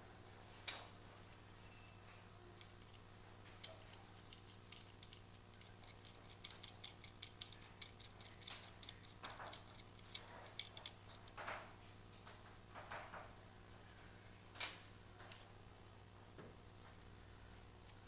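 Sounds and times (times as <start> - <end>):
hand tools and metal parts clicking: 2.6 - 11.7.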